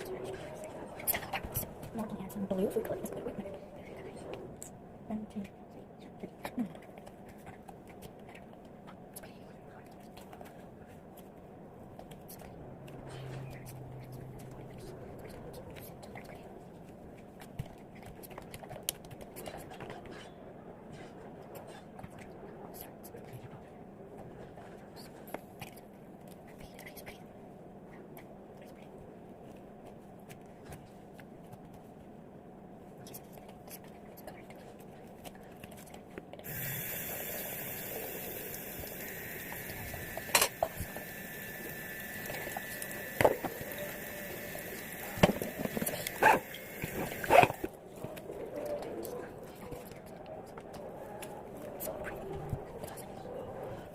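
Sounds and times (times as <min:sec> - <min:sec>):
water running: 0:36.5 - 0:47.7.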